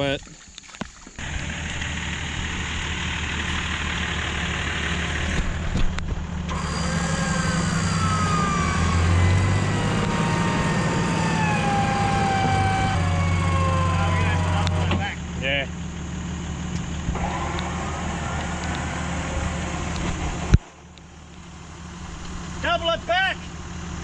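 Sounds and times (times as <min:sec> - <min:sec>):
vehicle engine running: 0:01.2 - 0:24.0
high whine sliding down: 0:06.5 - 0:15.3, 0:17.0 - 0:22.0.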